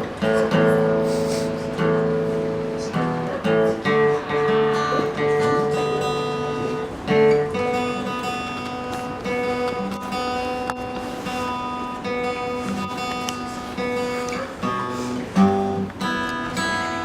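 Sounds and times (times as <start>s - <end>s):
acoustic guitar strumming chords: 0.0s - 17.0s.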